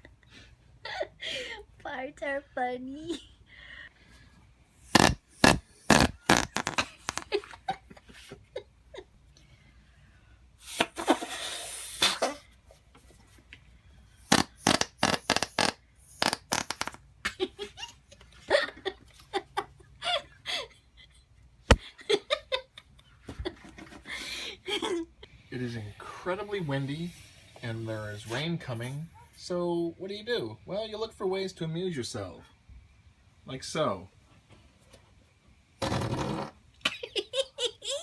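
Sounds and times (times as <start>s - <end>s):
whoopie cushion fart noises: 4.9s - 7.4s, 14.3s - 17.0s.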